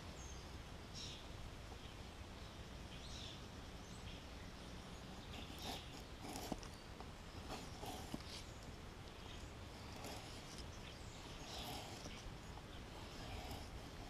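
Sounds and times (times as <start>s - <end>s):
knife scraping wooden stick: 5.2s - 6.8s, 7.4s - 8.5s, 9.7s - 14.0s.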